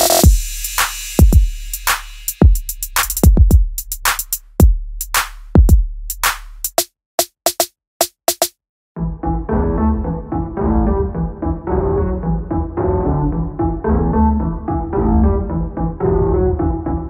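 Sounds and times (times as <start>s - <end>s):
deep bass: 0.0s - 6.7s, 9.0s - 17.0s
drum machine beat: 0.0s - 8.6s.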